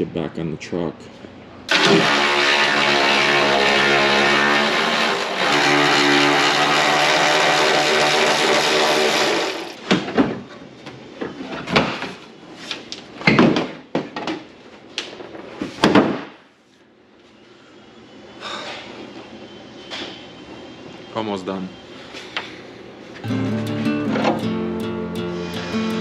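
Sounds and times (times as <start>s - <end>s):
loud droning hum: 0.0s - 9.8s, 17.4s - 26.0s.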